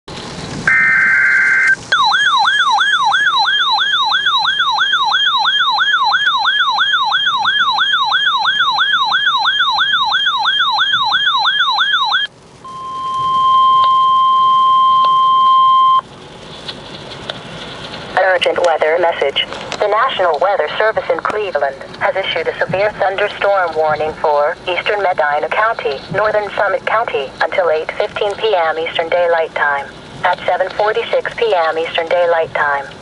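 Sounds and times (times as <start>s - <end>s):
electronic siren wailing: 0.6s - 16.0s
warbling data tones: 0.6s - 16.1s
steady single-pitch alarm tone: 0.7s - 16.0s.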